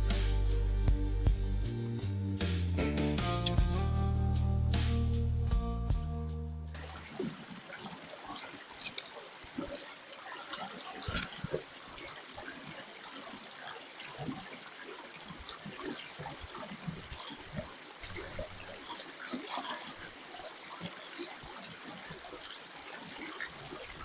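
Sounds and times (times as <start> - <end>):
stream water trickling: 6.7 - 24.0.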